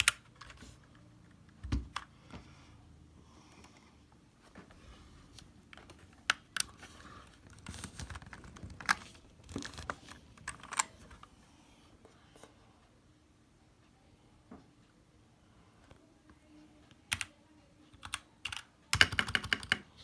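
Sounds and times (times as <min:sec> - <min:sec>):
mechanical keyboard keys clacking: 0:00.0 - 0:00.8, 0:05.7 - 0:11.3, 0:17.1 - 0:17.3, 0:17.9 - 0:19.9.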